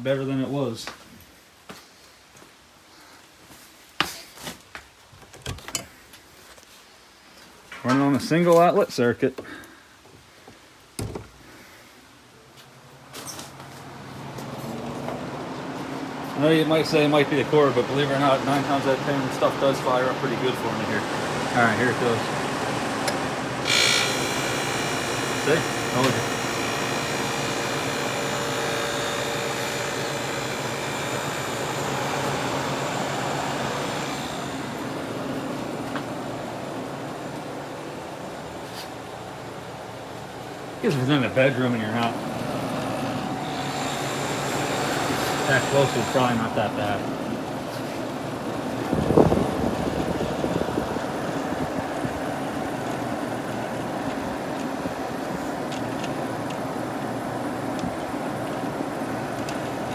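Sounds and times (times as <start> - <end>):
air conditioner fan rush: 12.6 - 59.9
compressor hum: 12.8 - 59.9.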